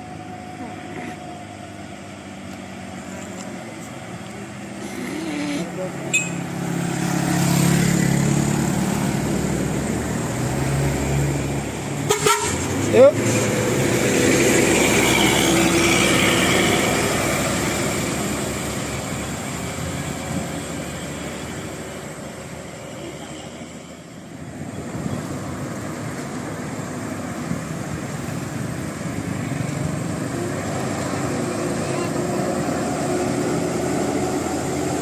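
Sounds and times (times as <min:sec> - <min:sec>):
approaching vehicle traffic noise: 0:00.0 - 0:35.0
bus engine and road noise: 0:00.0 - 0:35.0
multi-tone bus horn: 0:12.0 - 0:12.7.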